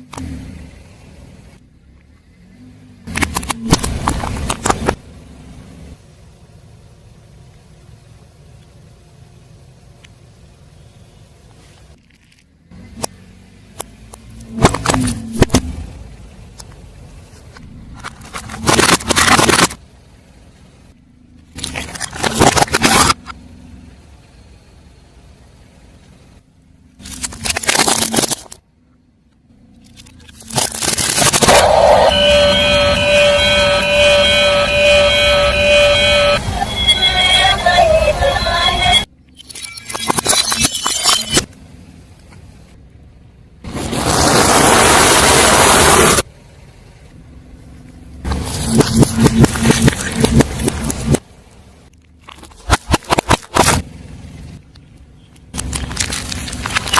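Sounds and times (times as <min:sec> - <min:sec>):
car engine rumble: 0:00.0 - 0:39.4, 0:41.4 - 0:56.9
tyre crushing crunchy objects: 0:30.1 - 0:32.0, 0:55.5 - 0:56.9.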